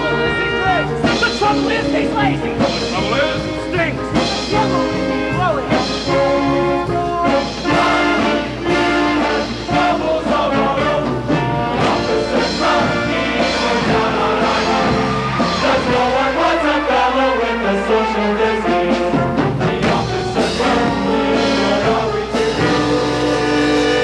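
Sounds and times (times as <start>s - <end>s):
band with brass playing: 0.0s - 24.0s
choir singing: 6.2s - 24.0s.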